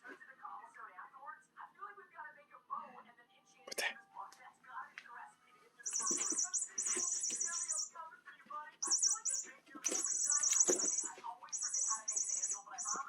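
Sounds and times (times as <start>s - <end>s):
toy warbling squeaks: 5.9s - 7.9s, 8.8s - 13.0s.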